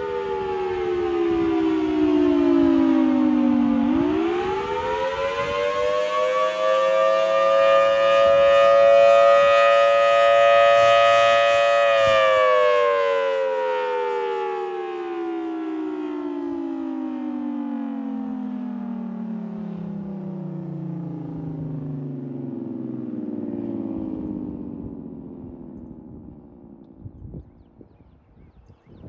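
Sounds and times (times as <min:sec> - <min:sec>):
storm siren wailing: 0:00.0 - 0:27.8.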